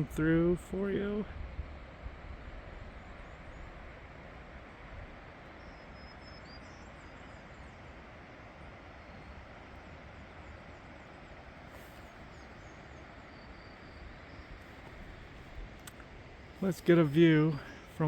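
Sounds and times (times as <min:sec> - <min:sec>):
steady outdoor rush: 0:00.0 - 0:18.0
faint high bird chirps: 0:05.5 - 0:07.8, 0:11.7 - 0:15.1.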